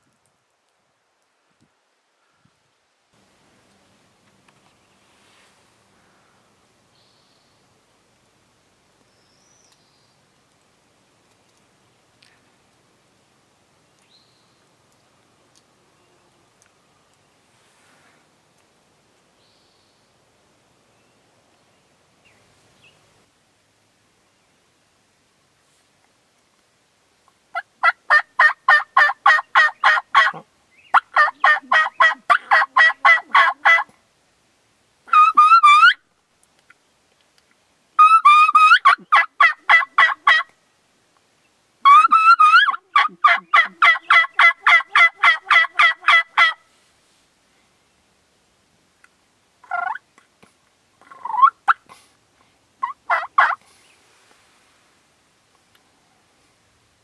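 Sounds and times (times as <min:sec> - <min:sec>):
turkey yelping: 0:27.6 - 0:33.9, 0:35.1 - 0:36.0, 0:38.0 - 0:40.5, 0:41.8 - 0:46.6, 0:49.6 - 0:50.0, 0:51.0 - 0:51.8, 0:52.8 - 0:53.6
turkey sliding call: 0:28.1 - 0:33.9, 0:35.1 - 0:36.0, 0:38.0 - 0:40.5, 0:41.8 - 0:46.6, 0:51.1 - 0:52.0, 0:52.8 - 0:53.6.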